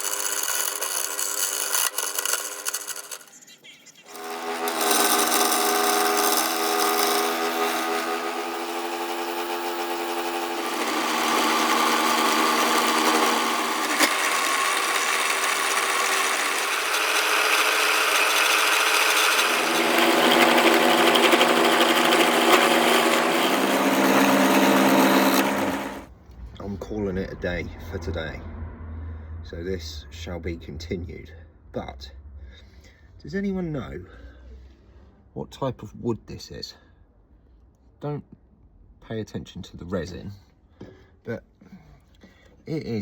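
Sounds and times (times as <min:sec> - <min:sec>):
tool cutting spinning wood: 0:00.0 - 0:03.3, 0:04.1 - 0:26.1
wood lathe running: 0:00.0 - 0:03.3, 0:04.1 - 0:26.1.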